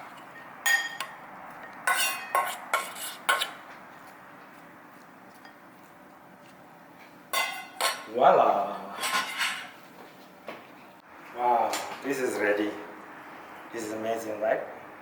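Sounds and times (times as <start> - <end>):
utensil clinking against cookware: 1.9 - 3.6, 7.3 - 8.1.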